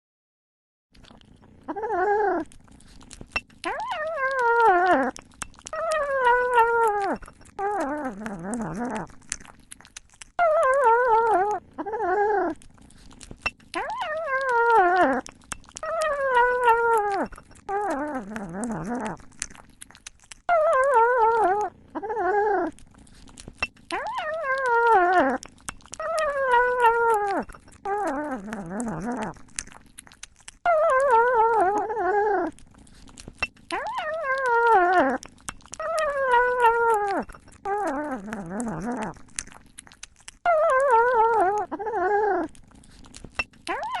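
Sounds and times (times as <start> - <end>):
cat meowing: 33.8 - 38.3.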